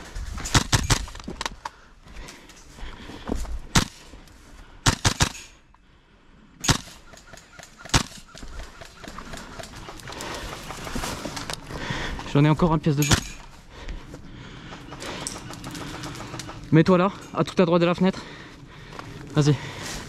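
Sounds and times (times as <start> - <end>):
airsoft rifle shots: 0.5 - 1.2, 3.8 - 4.0, 4.8 - 5.6, 6.6 - 10.4.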